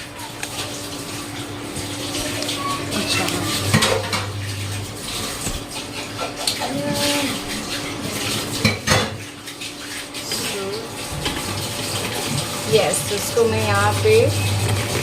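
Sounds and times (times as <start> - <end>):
dishes and utensils clinking: 1.8 - 4.5, 5.1 - 10.6.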